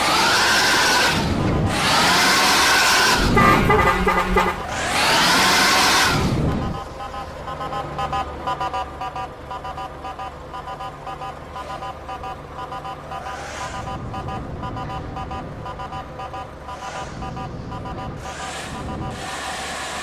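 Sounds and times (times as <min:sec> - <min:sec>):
engine running: 0:00.0 - 0:20.0
passing traffic: 0:00.0 - 0:20.0
multi-tone bus horn tune: 0:03.1 - 0:05.3.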